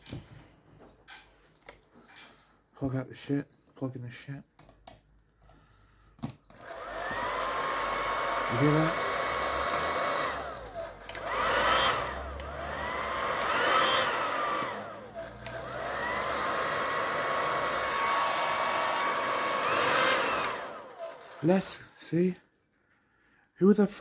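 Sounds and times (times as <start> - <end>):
hair dryer running: 6.6 - 21.8.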